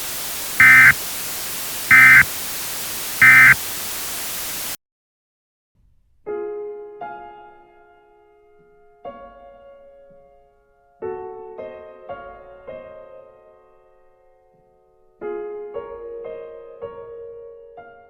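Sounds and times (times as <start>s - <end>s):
radio static: 0.0s - 4.8s
warbling digital data bursts: 0.0s - 4.8s.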